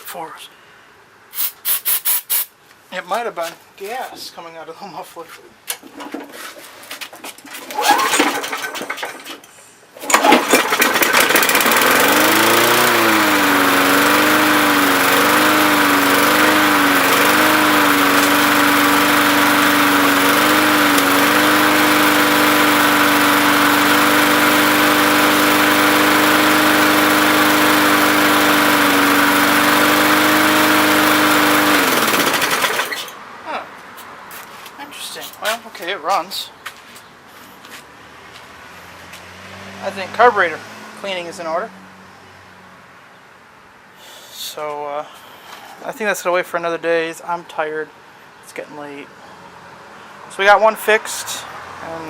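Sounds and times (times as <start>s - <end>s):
lawn mower engine pull-start: 5.7s - 33.2s
lawn mower engine surging: 7.4s - 33.2s.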